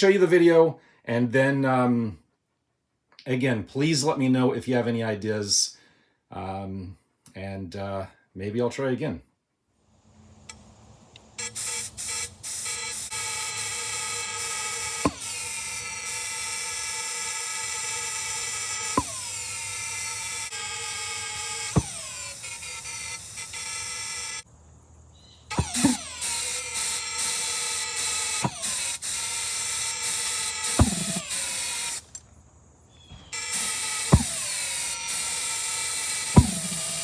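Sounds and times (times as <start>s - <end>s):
pulse jet buzzing drone: 10.2s - 24.5s, 25.5s - 32.2s, 33.3s - 37.0s
sharp pops: 11.4s - 24.5s, 25.5s - 32.4s, 33.1s - 37.0s.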